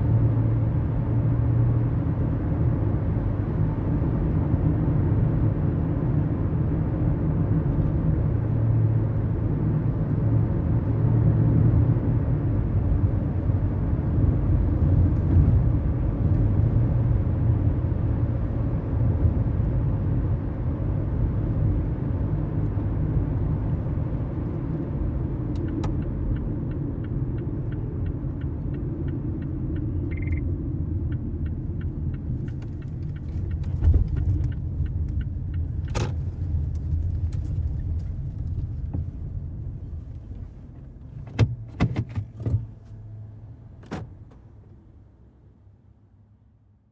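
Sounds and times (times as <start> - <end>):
engine and road rumble: 0.0 - 46.9
light ticking: 25.5 - 38.6
short beep: 30.0 - 30.5.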